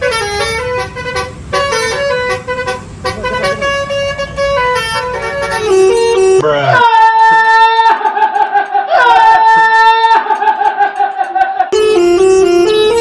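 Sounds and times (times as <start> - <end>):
multi-tone bus air horn tune: 0.0 - 7.6, 11.7 - 13.0.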